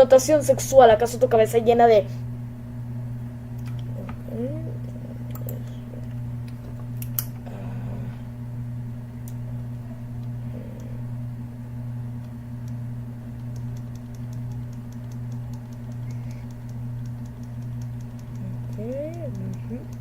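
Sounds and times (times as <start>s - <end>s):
steady low hum: 0.0s - 20.0s
computer mouse clicking: 5.3s - 5.6s, 12.2s - 12.8s, 13.4s - 20.0s.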